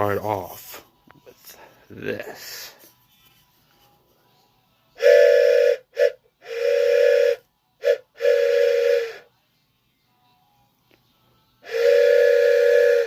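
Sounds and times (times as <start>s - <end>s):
toy train whistle toots: 5.0s - 9.3s, 11.6s - 13.0s.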